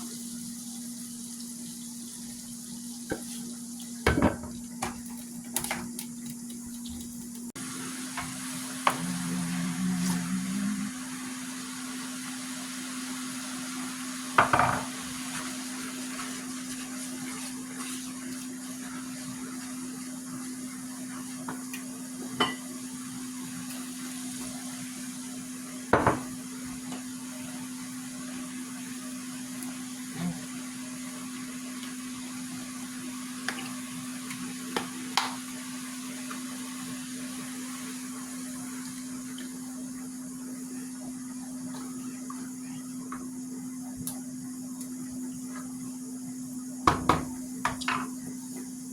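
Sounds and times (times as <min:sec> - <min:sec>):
steady low hum: 0:08.8 - 0:11.3.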